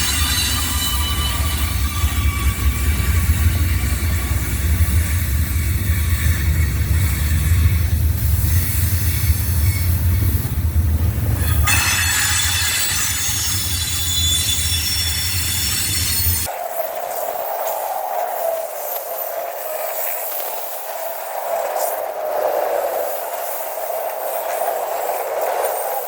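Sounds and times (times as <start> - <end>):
high wheel squeal: 0.0 - 10.5, 11.3 - 16.5
train wheels rumbling on rail: 0.0 - 16.5.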